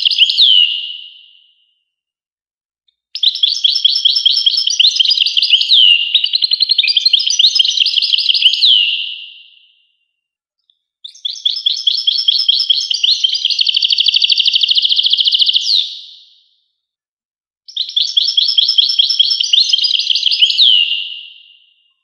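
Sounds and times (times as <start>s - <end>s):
finch singing: 0.0s - 0.9s, 3.2s - 9.5s, 11.1s - 16.0s, 17.7s - 21.5s.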